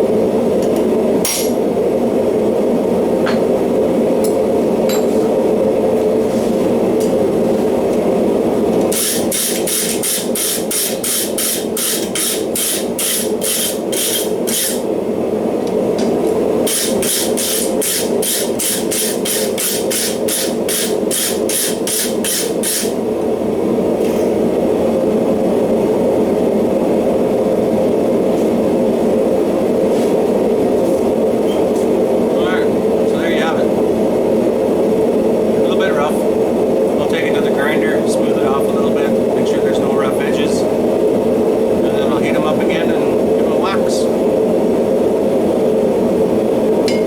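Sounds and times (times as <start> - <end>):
hammer striking metal: 1.3 - 1.6.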